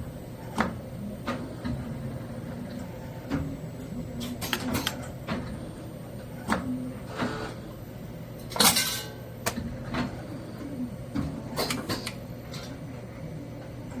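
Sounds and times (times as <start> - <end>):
machine hum: 0.0 - 14.0.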